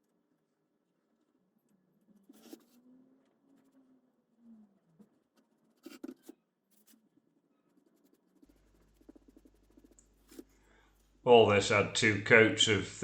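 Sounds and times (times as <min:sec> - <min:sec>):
paintbrush scratching on wood: 0:05.7 - 0:10.5.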